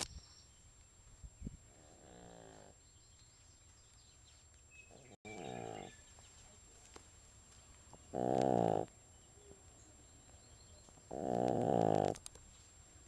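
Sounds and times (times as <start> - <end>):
dog snoring: 5.3 - 5.9, 8.1 - 8.9, 11.1 - 12.2.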